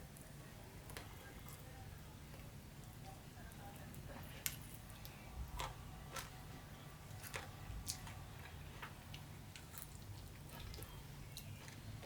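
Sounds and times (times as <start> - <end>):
person chewing food: 4.1 - 12.0.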